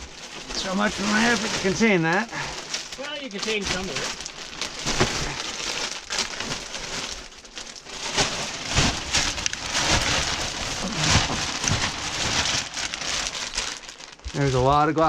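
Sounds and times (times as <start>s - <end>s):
debris and glass crunching: 0.0s - 15.0s.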